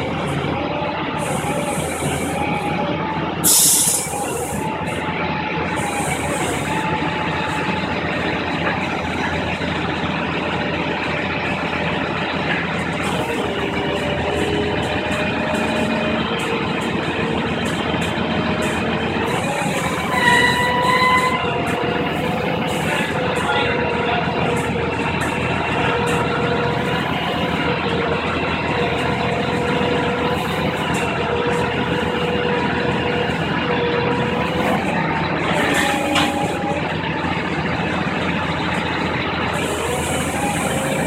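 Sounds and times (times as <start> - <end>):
heavy vehicle engine running: 0.0 - 41.0
burst of hiss: 3.4 - 4.6.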